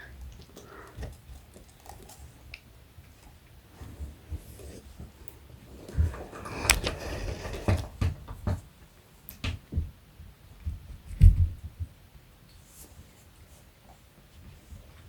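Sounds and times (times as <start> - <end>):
rustling: 0.0 - 8.6
cats thumping while play-fighting: 5.8 - 10.0, 10.6 - 12.0.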